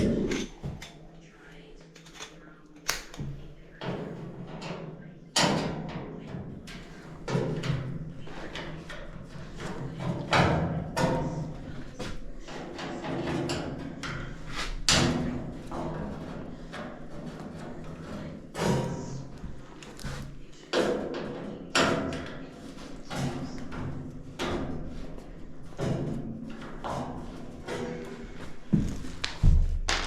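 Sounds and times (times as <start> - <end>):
steady low hum: 0.0 - 5.3
thumps knocks and clatter: 20.8 - 30.0.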